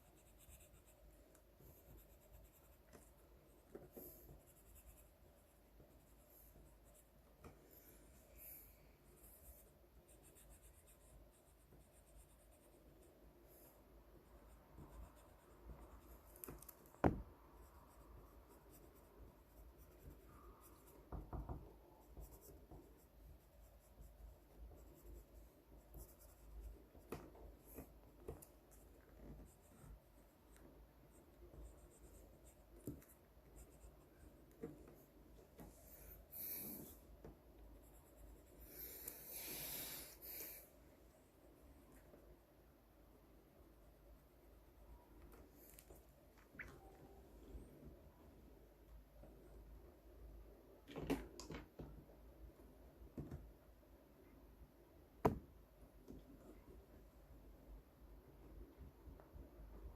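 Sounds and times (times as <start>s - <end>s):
pencil scratching on paper: 0.0s - 30.3s, 31.1s - 34.7s.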